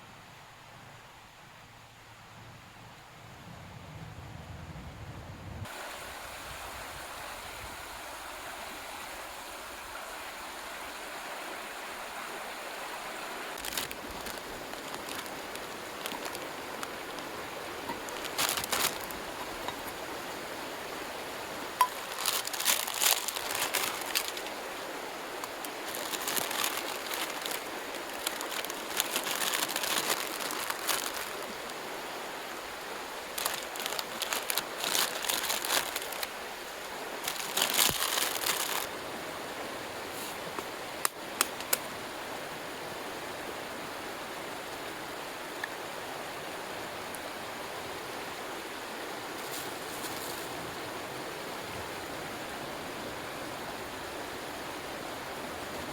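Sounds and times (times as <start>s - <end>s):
stream running: 5.6s - 55.9s
crinkling and crackling: 13.5s - 20.0s, 21.8s - 24.6s, 25.4s - 31.8s, 33.3s - 36.3s, 37.2s - 38.9s.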